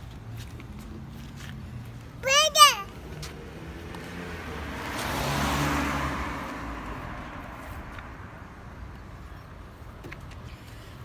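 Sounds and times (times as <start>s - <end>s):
vehicle passing by: 2.9s - 9.0s.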